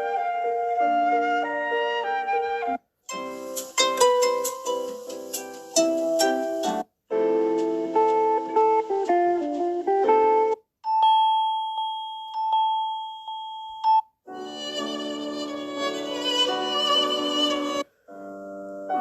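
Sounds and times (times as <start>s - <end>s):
phone ringtone melody: 10.8s - 15.4s
bell-like notification tone: 10.9s - 14.1s.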